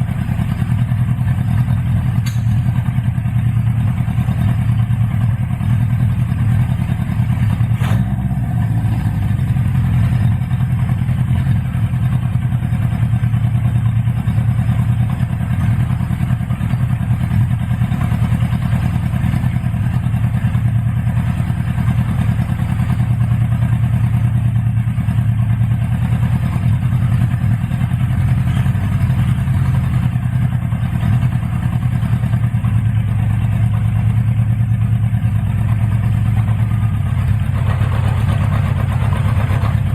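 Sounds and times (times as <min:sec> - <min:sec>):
motorcycle engine idling: 0:00.0 - 0:39.9.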